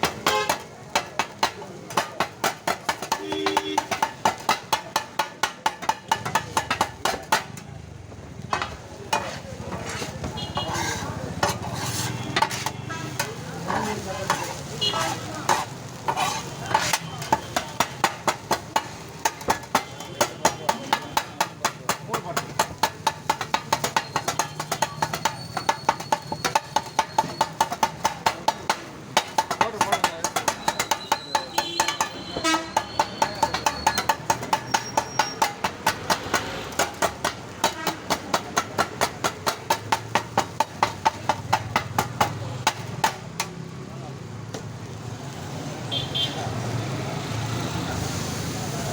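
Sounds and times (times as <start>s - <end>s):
metal blades clanking on griddle: 0.0s - 7.7s, 8.5s - 43.5s
food sizzling: 0.0s - 48.9s.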